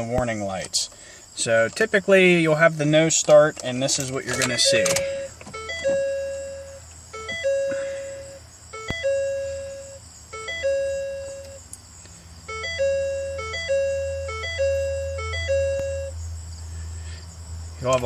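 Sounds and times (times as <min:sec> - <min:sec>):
truck warning chime: 0:03.7 - 0:11.7, 0:12.4 - 0:16.2.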